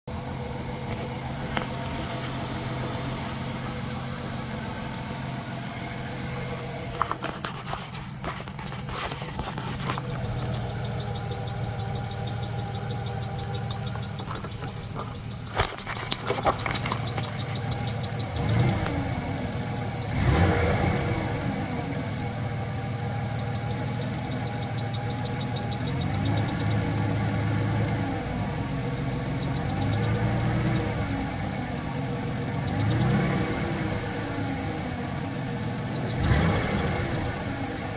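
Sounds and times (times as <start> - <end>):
engine idling and revving: 0.0 - 37.9
sharp clicks: 0.1 - 19.4
rapid chirping squeak: 0.1 - 37.9.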